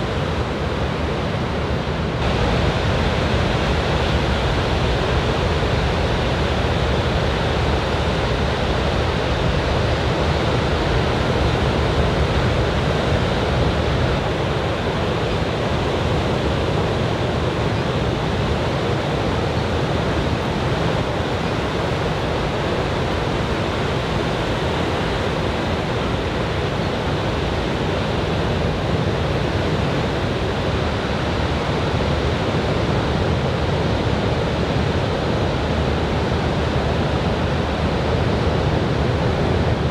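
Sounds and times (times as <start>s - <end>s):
surf breaking on beach: 2.2s - 30.6s.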